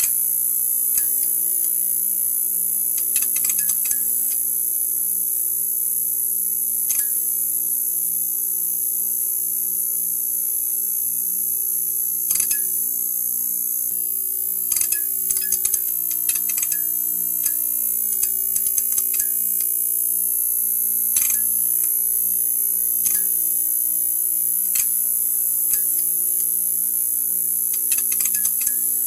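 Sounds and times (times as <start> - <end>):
sharp crackling clicks: 24.7 - 25.0, 27.7 - 28.8.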